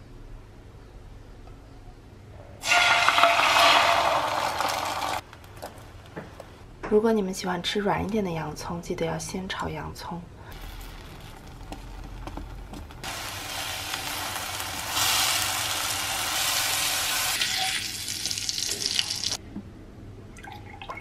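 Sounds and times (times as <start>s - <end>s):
food sizzling in frying pan: 2.6s - 5.2s, 10.5s - 19.4s.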